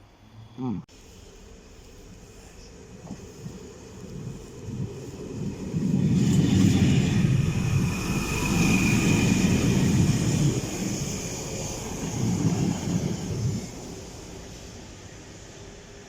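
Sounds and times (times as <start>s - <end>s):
train rumbling past: 0.9s - 16.0s
high train squeal: 5.3s - 16.0s.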